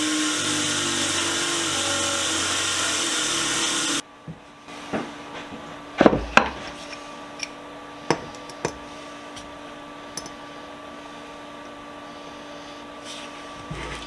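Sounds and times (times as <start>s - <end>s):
steady background hum: 4.0s - 14.0s.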